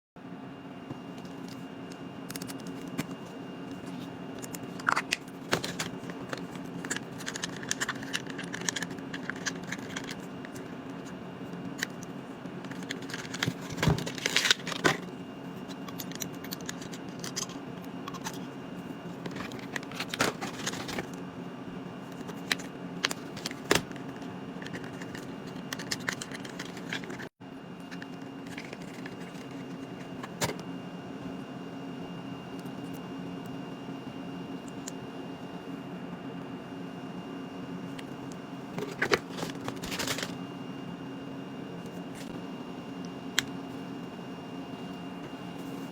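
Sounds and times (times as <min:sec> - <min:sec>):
steady low hum: 0:00.2 - 0:45.9
packaging rustling and clicks: 0:01.0 - 0:18.4, 0:19.2 - 0:21.2, 0:22.1 - 0:30.6, 0:38.8 - 0:40.4.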